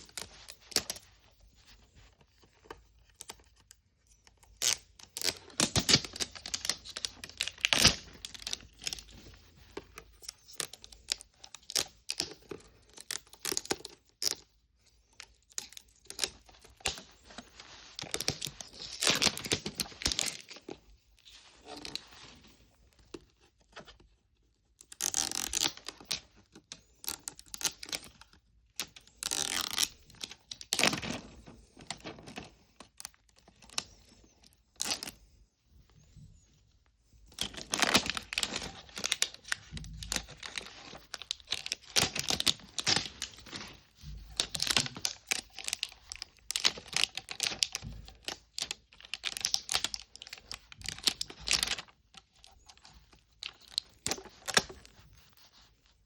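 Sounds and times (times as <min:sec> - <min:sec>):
plastic packaging tearing and crinkling: 0:04.6 - 0:09.2, 0:10.3 - 0:14.4, 0:15.5 - 0:20.7, 0:24.9 - 0:26.2, 0:27.0 - 0:28.2, 0:28.8 - 0:33.8, 0:37.3 - 0:51.9, 0:53.4 - 0:54.9.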